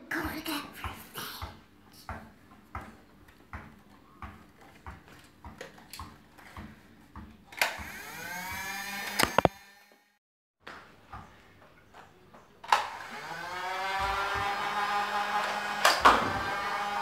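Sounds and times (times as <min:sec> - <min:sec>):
toy blaster motor whining: 0:07.6 - 0:10.0.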